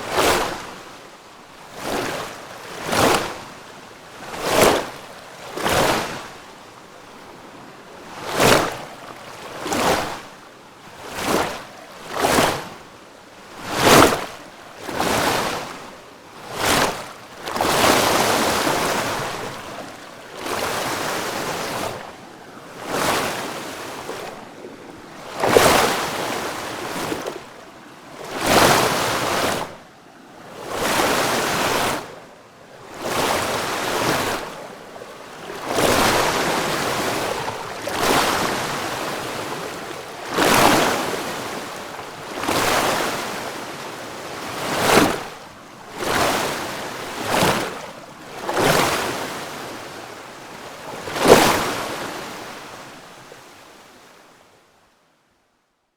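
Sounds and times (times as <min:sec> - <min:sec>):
water rushing and splashing: 0:00.0 - 0:00.9, 0:13.6 - 0:22.1, 0:22.7 - 0:29.8, 0:30.6 - 0:32.2, 0:32.8 - 0:49.8, 0:50.8 - 0:52.5.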